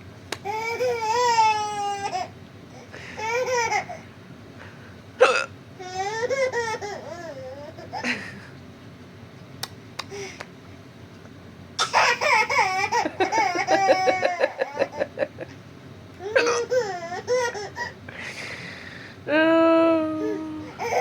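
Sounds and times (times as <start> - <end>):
baby laughing: 3.2 - 4.0, 5.8 - 8.2, 11.8 - 15.5, 16.2 - 18.0, 20.3 - 21.0
woman hiccuping: 5.2 - 5.5, 16.4 - 16.7.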